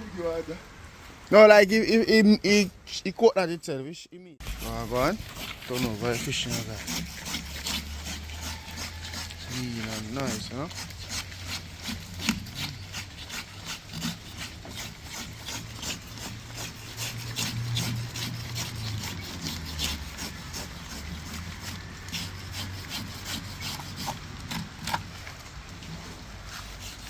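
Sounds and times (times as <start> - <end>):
rhythmic hand scraping: 4.4 - 25.0, 26.5 - 27.0.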